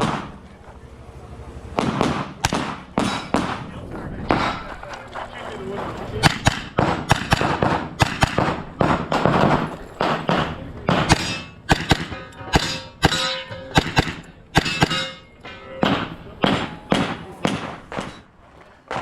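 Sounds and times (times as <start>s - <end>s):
gunshots: 0.0s - 0.4s, 1.8s - 4.9s, 6.2s - 15.2s, 15.8s - 18.3s
steel targets ringing: 10.0s - 18.3s.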